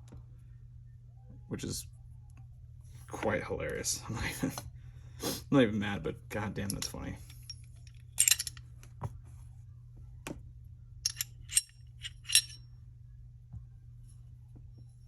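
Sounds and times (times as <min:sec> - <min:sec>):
steady low hum: 0:00.0 - 0:15.0
small metal parts clinking: 0:06.6 - 0:08.6, 0:11.0 - 0:12.6.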